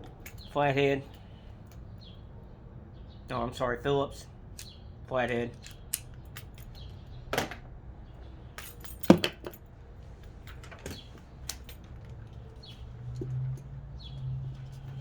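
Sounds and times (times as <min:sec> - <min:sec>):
metal hand tools clinking: 0:08.6 - 0:09.6.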